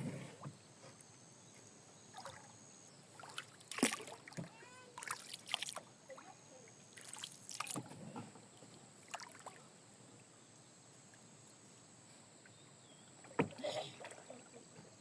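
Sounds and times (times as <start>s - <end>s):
faint steady hiss: 0.0s - 15.0s
water splashes and knocks: 3.2s - 5.9s, 7.0s - 9.6s, 13.2s - 15.0s.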